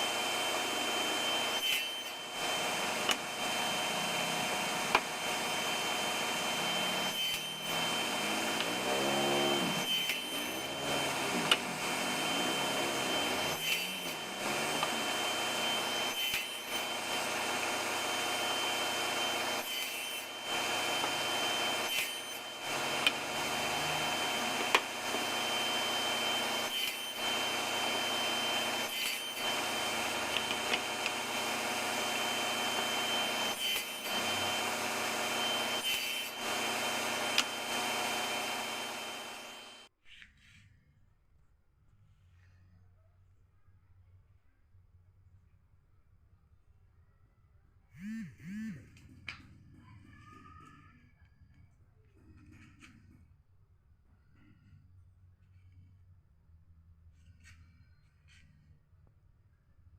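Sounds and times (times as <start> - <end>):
table saw cutting wood: 0.0 - 39.9, 48.0 - 49.1.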